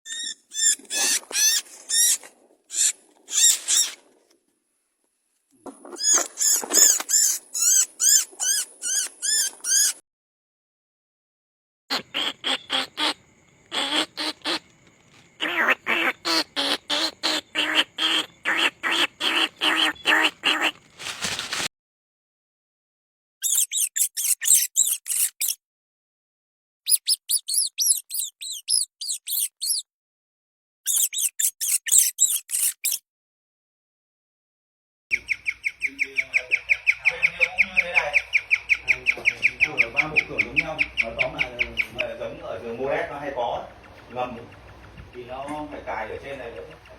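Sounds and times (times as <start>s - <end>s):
high squeaking trill: 0.0s - 4.0s, 6.0s - 10.0s, 23.4s - 25.6s, 26.9s - 29.8s, 30.9s - 33.0s
mouse squeaks: 0.0s - 4.0s, 5.8s - 10.0s, 23.4s - 25.6s, 26.9s - 29.9s, 30.9s - 33.0s, 35.1s - 42.8s.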